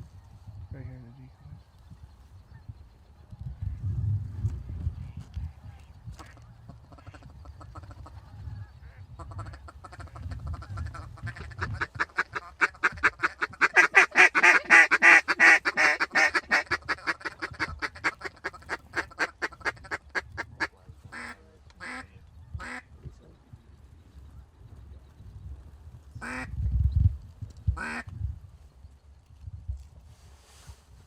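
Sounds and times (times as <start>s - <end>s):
duck call quacking: 9.2s - 22.0s.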